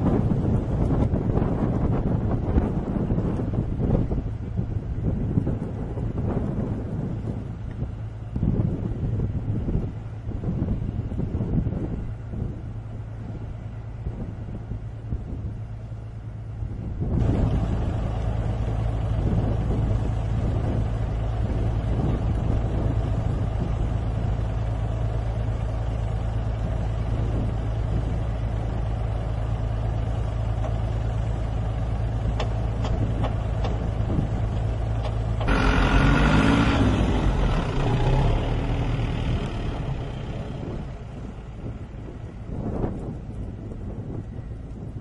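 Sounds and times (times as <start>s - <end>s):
heavy engine running: 0.0s - 45.0s.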